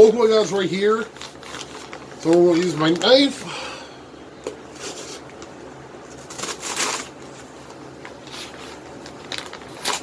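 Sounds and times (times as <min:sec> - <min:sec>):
package rustling and scraping: 0:01.0 - 0:03.2, 0:06.0 - 0:10.0.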